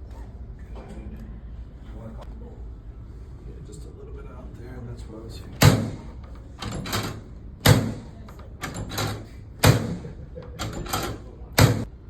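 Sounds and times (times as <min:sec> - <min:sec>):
drop table heavy thuds: 0:05.6 - 0:11.9.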